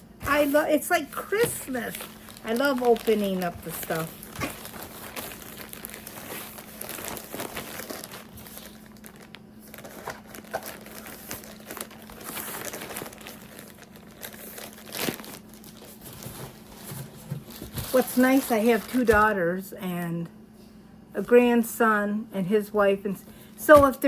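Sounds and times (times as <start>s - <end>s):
faint steady hum: 0.0s - 24.0s
packaging crinkling and tearing: 0.2s - 19.2s.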